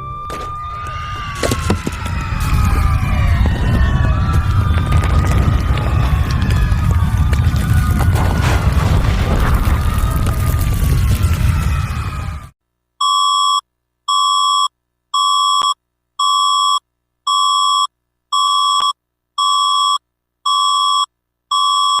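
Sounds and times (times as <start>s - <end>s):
loud rumbling noise: 0.7s - 12.5s.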